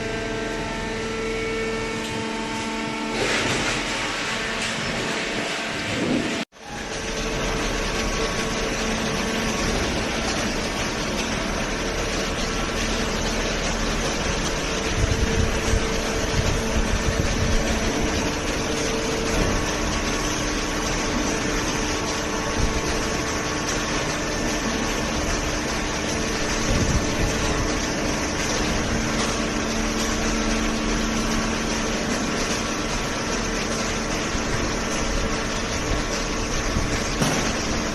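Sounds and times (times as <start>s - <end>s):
cardboard baler droning: 0.0s - 37.9s
loud knocks: 37.1s - 37.9s.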